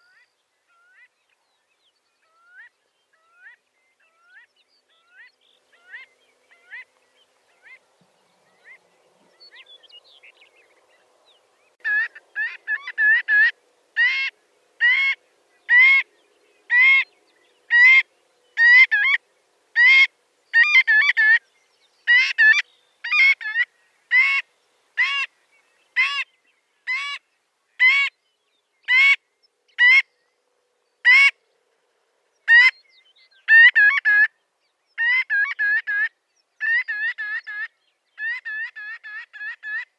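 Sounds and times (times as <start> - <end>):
godwits calling: 11.8 - 19.2, 19.8 - 21.4, 22.0 - 26.3.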